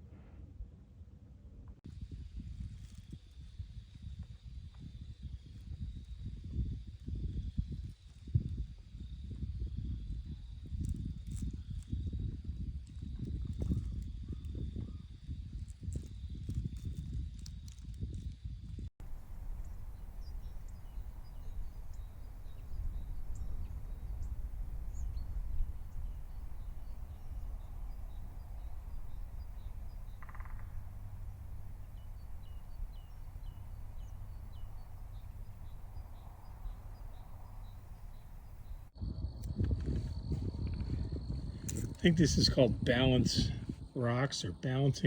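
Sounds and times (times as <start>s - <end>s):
small birds chirping: 2.8s - 45.0s
steady low rumble: 18.2s - 45.0s.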